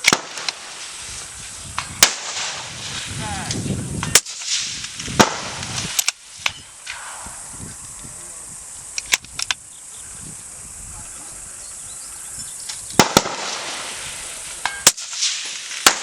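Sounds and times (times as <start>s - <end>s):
suppressed rifle shots: 0.0s - 0.7s, 1.8s - 2.7s, 4.0s - 7.2s, 13.0s - 13.9s, 14.6s - 16.0s.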